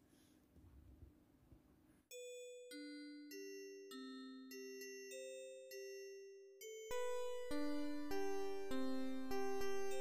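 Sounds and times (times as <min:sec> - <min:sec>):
soft bell-like keyboard notes: 0:02.1 - 0:10.0.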